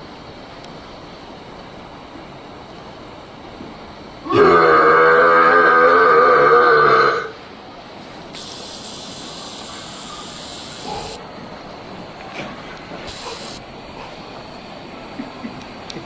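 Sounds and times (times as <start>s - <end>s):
high hiss: 7.2s - 11.9s, 13.0s - 15.0s.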